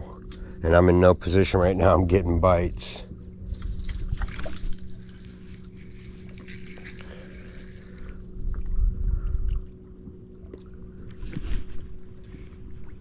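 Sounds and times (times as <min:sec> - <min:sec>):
wind rumble on microphone: 0:00.0 - 0:07.0, 0:07.9 - 0:13.0
high insect trill: 0:00.0 - 0:09.2.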